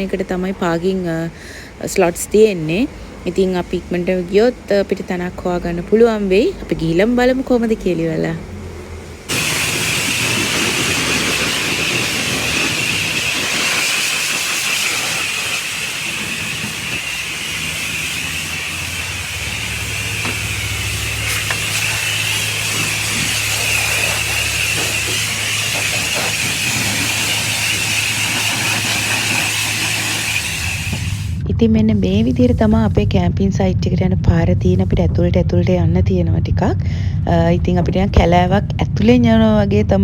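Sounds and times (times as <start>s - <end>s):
low machine hum: 0.0s - 40.0s
high-pressure water spray hissing: 9.3s - 31.4s.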